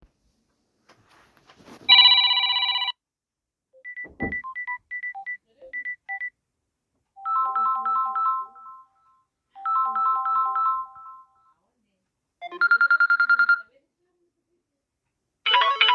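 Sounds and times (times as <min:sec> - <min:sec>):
phone ringtone: 0:01.9 - 0:03.0, 0:07.2 - 0:11.5, 0:12.4 - 0:13.7, 0:15.5 - 0:15.9.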